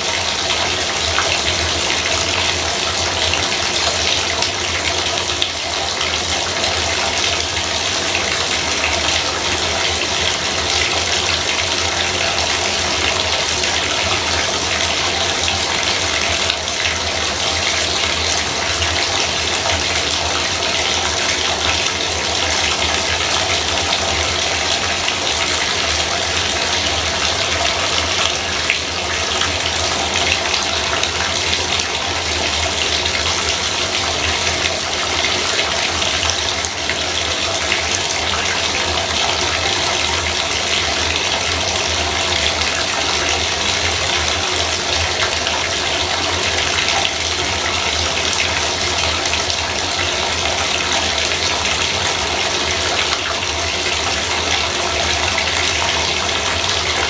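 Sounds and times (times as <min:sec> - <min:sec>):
faucet water gushing: 0:00.0 - 0:57.0.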